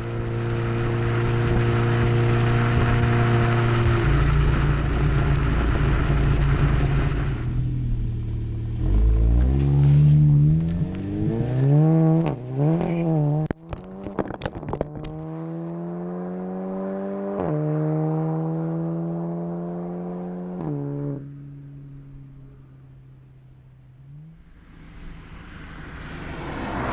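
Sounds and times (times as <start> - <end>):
car engine revving: 0.0 - 23.1, 23.9 - 26.9
exhaust crackles: 2.6 - 15.4.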